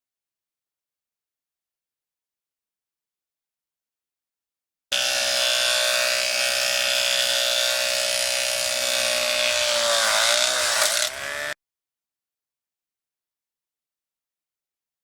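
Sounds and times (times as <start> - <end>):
small electric motor whine: 4.9 - 11.6.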